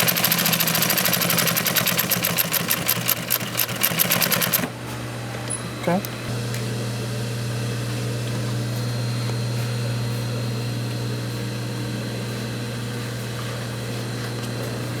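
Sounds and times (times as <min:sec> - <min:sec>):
sewing machine motor humming: 0:00.0 - 0:04.7.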